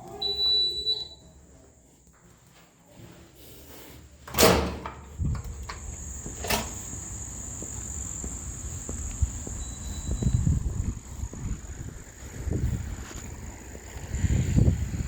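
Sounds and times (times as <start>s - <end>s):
low rumble of wind: 4.8s - 15.0s.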